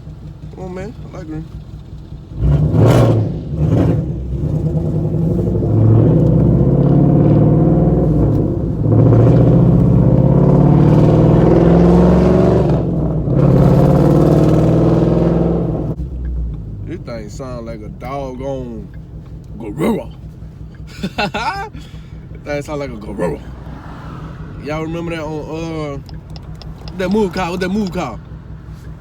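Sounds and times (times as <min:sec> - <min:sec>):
car exhaust revving: 0:00.0 - 0:29.0.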